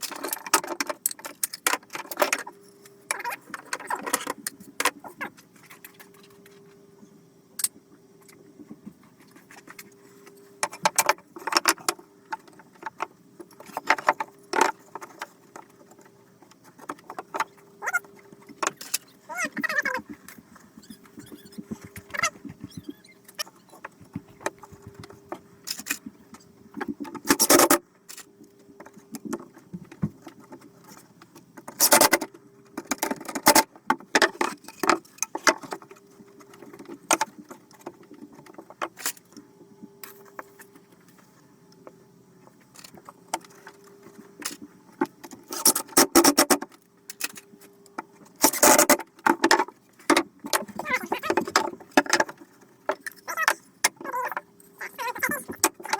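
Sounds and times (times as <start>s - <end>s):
tools clicking and knocking: 20.8s - 26.1s.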